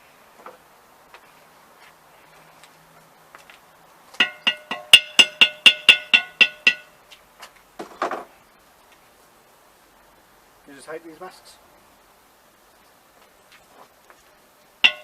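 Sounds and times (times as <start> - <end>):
ringing metal strikes on wheel: 4.2 - 7.0.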